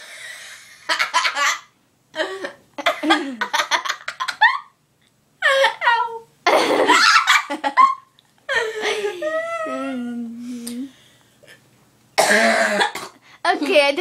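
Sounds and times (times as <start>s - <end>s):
girl laughing: 1.0s - 4.8s, 5.4s - 10.2s.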